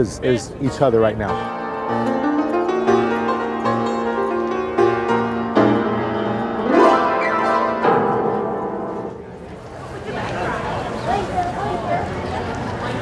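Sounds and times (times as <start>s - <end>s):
piano background music: 0.8s - 9.4s.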